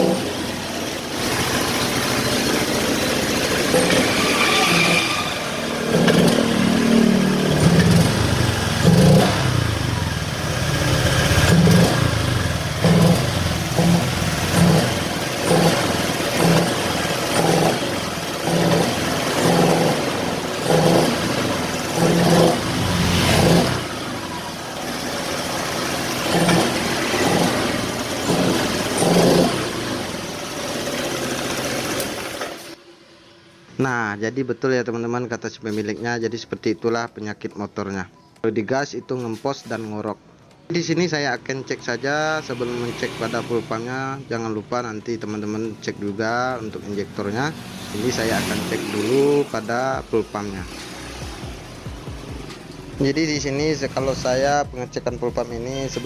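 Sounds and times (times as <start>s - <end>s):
scooter engine revving roughly: 0.0s - 32.8s, 42.4s - 44.0s, 47.0s - 54.7s.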